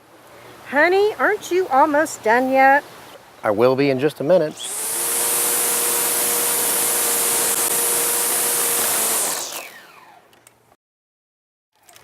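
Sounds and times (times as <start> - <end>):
electric power tool winding down: 4.6 - 10.4.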